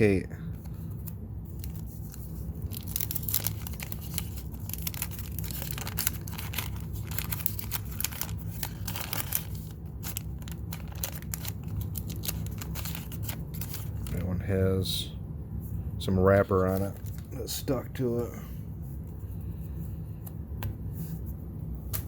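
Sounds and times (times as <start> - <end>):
wax paper wrapper tearing: 0.7 - 14.3.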